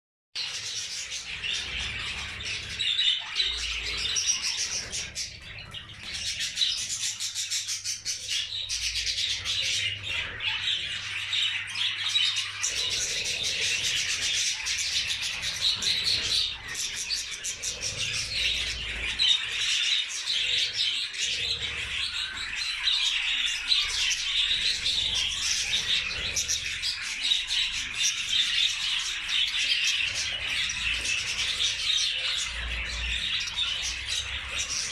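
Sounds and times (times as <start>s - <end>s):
budgerigars chattering: 0.4s - 34.9s.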